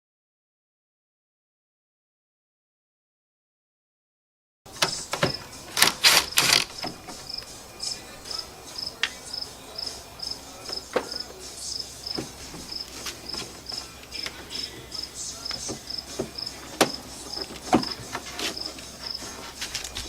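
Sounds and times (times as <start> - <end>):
cricket chirping: 4.7 - 20.0
knocks and rattles: 15.5 - 20.0.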